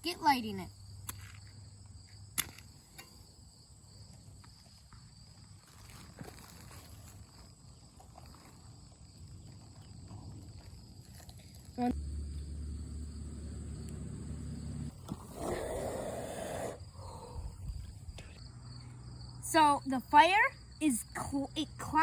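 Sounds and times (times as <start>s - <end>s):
insects buzzing: 11.7s - 22.0s.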